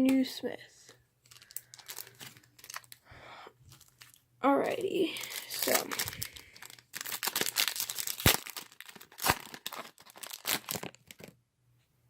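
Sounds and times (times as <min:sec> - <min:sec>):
foil wrapper crinkling and tearing: 0:01.3 - 0:03.0, 0:03.7 - 0:04.2, 0:05.1 - 0:11.4.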